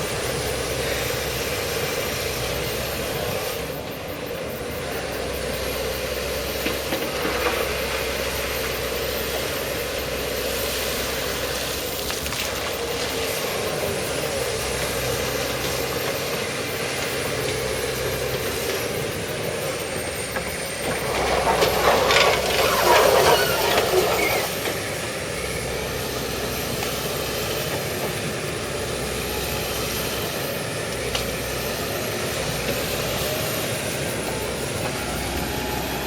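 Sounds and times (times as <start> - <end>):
excavator diesel engine running: 0.0 - 36.0.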